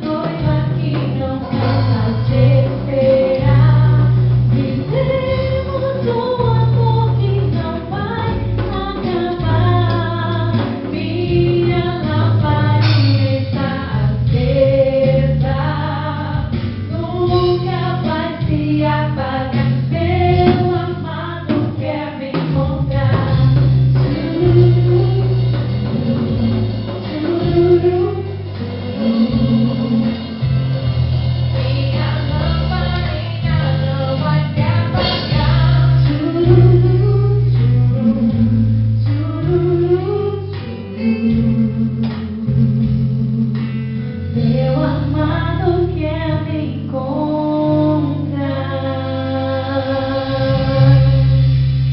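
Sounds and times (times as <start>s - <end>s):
gospel song with singing: 0.0s - 51.8s
steady bass line: 0.0s - 51.9s.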